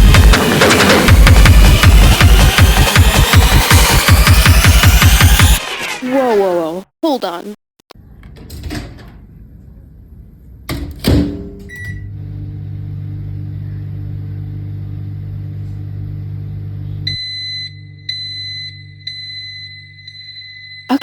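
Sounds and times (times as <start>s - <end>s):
microwave humming: 11.4s - 19.9s
microwave button beep: 11.7s - 12.1s, 17.1s - 20.9s
microwave finished beeps: 11.7s - 12.2s, 17.0s - 21.0s.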